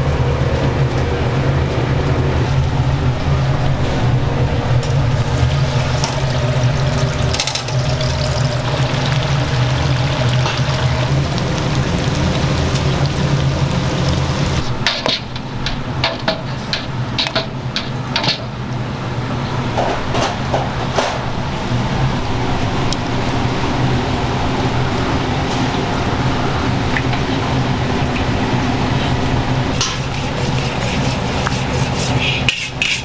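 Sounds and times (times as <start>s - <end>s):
low machine hum: 0.0s - 14.8s
sizzling: 4.9s - 14.8s, 29.7s - 33.0s.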